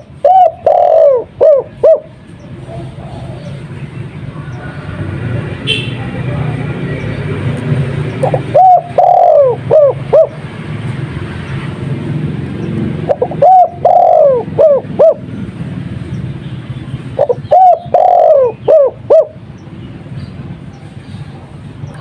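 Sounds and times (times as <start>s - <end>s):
dove cooing: 0.0s - 3.8s, 8.1s - 10.5s, 12.9s - 15.3s, 17.2s - 19.4s.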